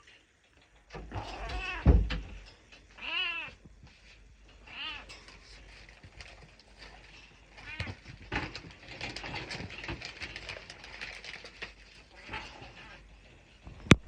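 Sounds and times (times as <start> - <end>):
cat meowing: 1.2 - 1.9, 3.0 - 3.6, 4.6 - 5.1.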